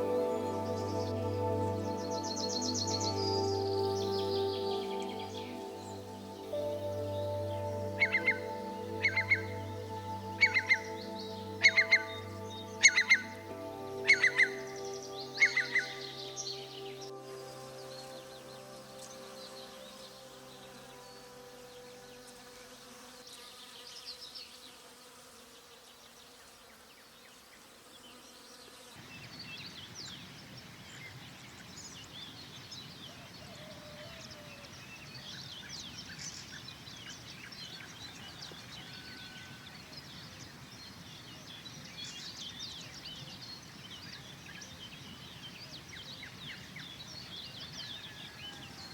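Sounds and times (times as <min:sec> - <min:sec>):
soft sustained music: 0:00.0 - 0:23.3
insects buzzing: 0:00.0 - 0:30.8
small birds chirping: 0:00.0 - 0:48.9.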